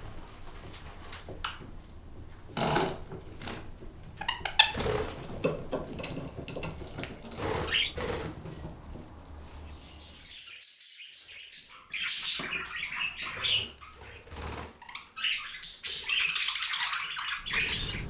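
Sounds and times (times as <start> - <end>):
sharp clicks and knocks: 0.0 - 9.6
budgies chattering and squeaking: 1.9 - 18.0.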